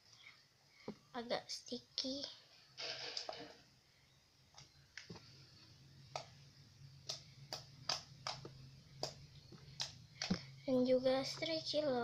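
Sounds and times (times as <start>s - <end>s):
slime clicking and popping: 7.0s - 10.5s.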